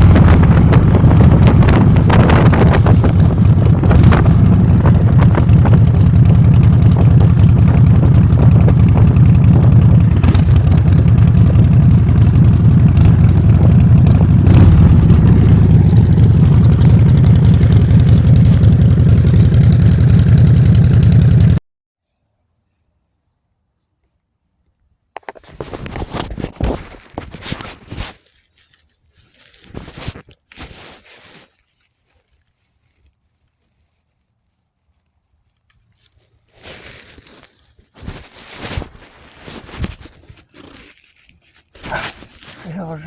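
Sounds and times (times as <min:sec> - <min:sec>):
wind rumble on microphone: 0:00.0 - 0:18.6
motor scooter engine running: 0:00.0 - 0:21.6.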